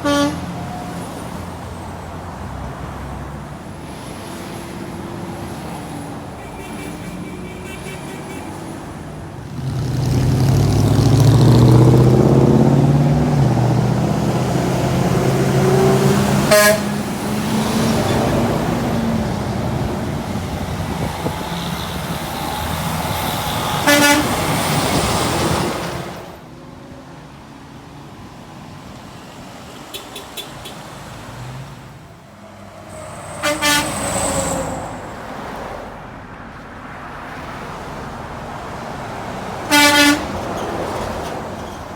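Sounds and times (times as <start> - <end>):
truck horn blasts: 0.0 - 0.9, 6.4 - 8.7, 14.9 - 17.4, 23.6 - 25.0, 33.0 - 34.2, 39.7 - 40.4
trucks driving past: 0.0 - 41.9.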